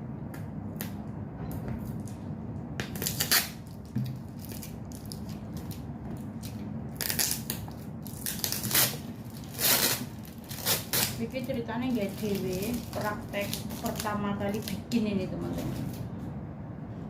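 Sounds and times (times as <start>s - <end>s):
plastic packaging crinkling: 3.0s - 15.0s.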